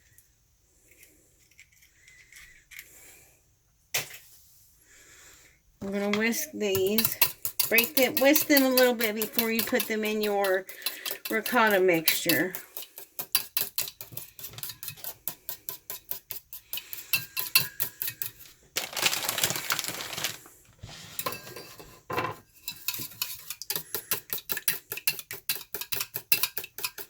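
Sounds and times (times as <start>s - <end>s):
whisk beating eggs in bowl: 5.8s - 18.6s, 22.6s - 27.0s
rustling noise: 18.4s - 21.9s.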